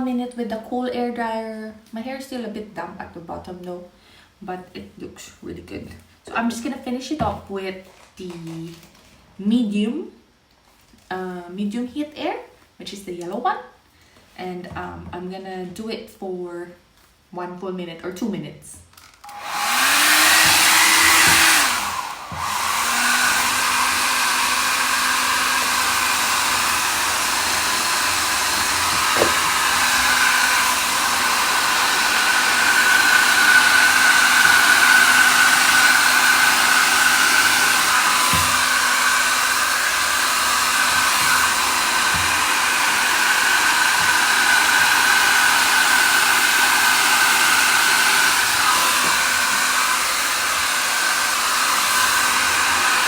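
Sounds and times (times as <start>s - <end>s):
hair dryer running: 19.2s - 53.0s.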